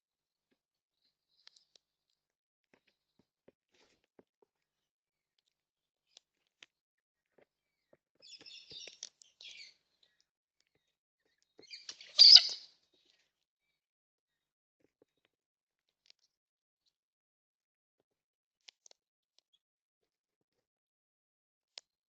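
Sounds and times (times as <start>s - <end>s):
high bird chirps: 8.2s - 9.8s, 11.3s - 12.7s
harsh bird screech: 11.9s - 12.6s.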